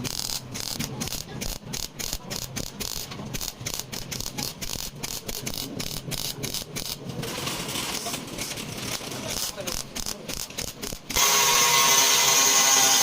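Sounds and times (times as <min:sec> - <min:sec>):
rapid sharp clicks: 0:00.0 - 0:07.0, 0:09.3 - 0:11.2.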